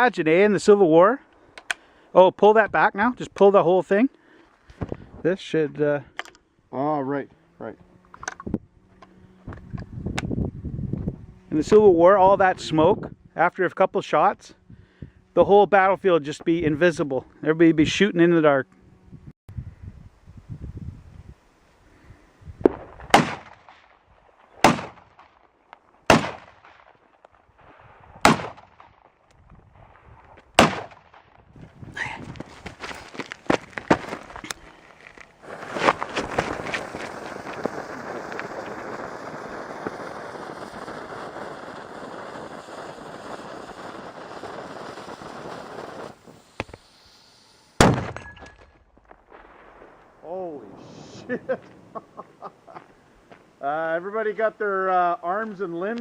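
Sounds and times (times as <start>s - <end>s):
cannon blast echoing: 22.7s - 23.9s, 24.6s - 25.3s, 26.1s - 27.0s, 28.2s - 29.1s, 30.6s - 31.4s, 47.8s - 48.4s
gunshots with echo: 24.6s - 25.0s, 30.6s - 31.1s.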